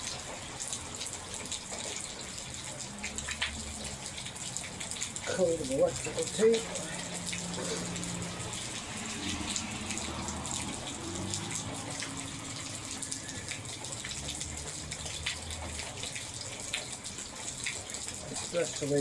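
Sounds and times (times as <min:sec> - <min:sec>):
steady rain: 0:00.0 - 0:19.0
water splashing from downspout: 0:00.0 - 0:19.0.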